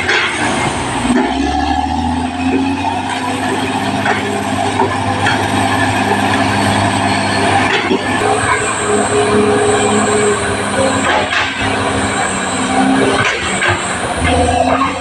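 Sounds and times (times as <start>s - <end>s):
bulldozer diesel engine under load: 0.0s - 15.0s
metallic clatter of steel tracks: 0.0s - 15.0s
steady whine: 3.2s - 15.0s.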